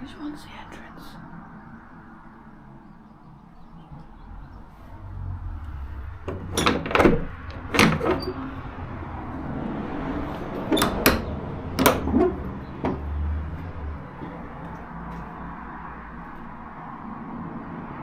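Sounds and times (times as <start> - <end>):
steady low rumble: 0.0 - 18.0
door latch clacking: 5.7 - 15.3.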